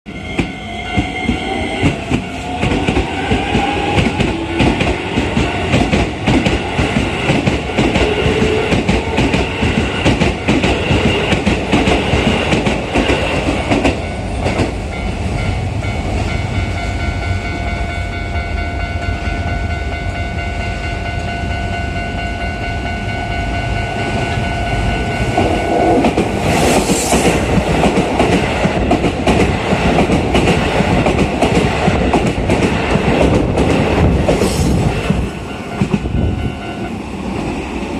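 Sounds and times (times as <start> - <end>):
train motor whine: 25.4 - 27.4.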